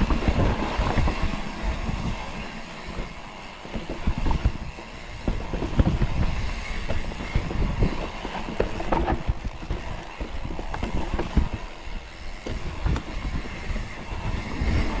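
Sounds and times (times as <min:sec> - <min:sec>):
bike rattling over rough ground: 0:00.0 - 0:15.0.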